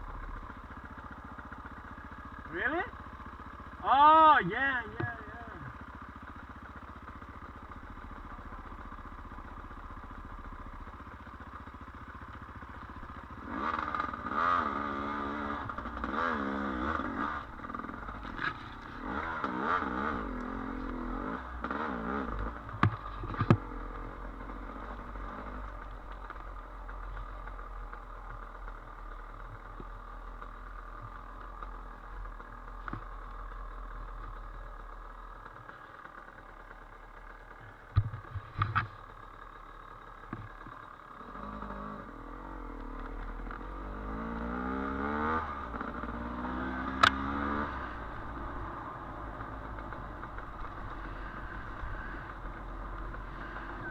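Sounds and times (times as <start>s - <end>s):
dirt bike engine revving: 13.2s - 25.7s, 41.2s - 53.9s.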